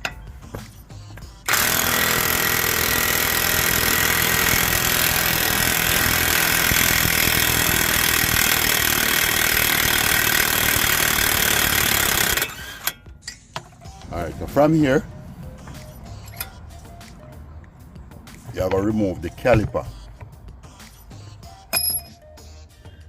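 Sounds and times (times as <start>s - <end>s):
impact wrench hammering: 1.5s - 13.7s, 21.7s - 22.2s.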